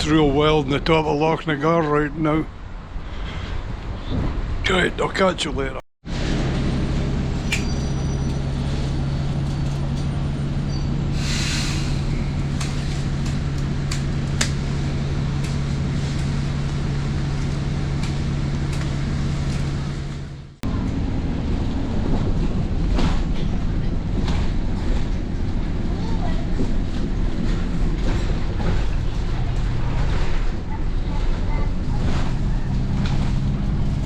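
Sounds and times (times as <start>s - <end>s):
vehicle engine rumbling: 0.0s - 34.0s.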